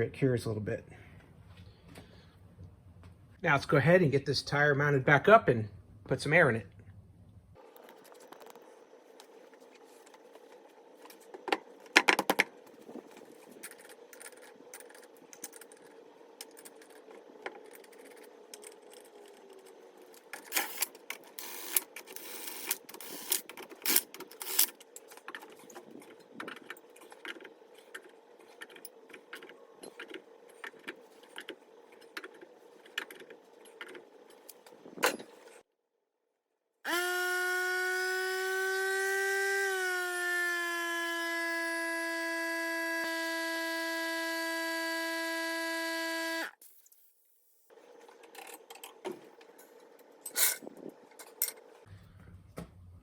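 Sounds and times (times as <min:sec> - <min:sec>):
electric tire inflator humming: 0:36.9 - 0:46.5.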